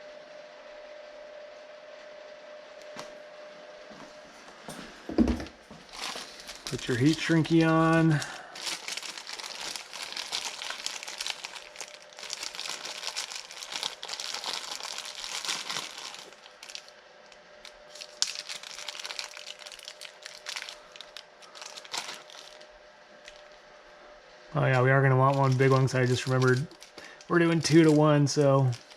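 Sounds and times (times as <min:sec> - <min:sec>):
plastic packaging crinkling: 0:05.7 - 0:23.6, 0:24.9 - 0:28.9.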